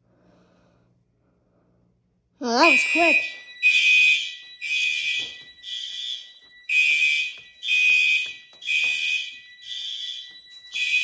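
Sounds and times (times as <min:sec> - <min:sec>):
fire alarm high-pitched blasts: 0:02.4 - 0:11.0.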